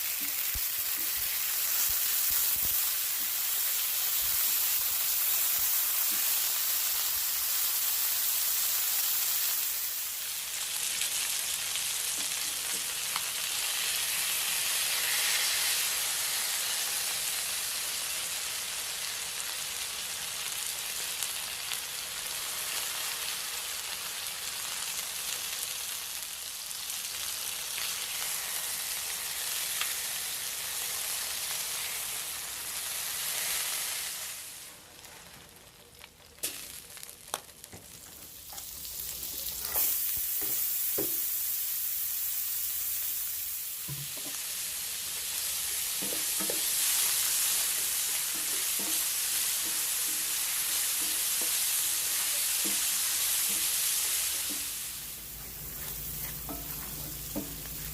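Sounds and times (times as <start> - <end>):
steady sizzling hiss: 0.0 - 57.9.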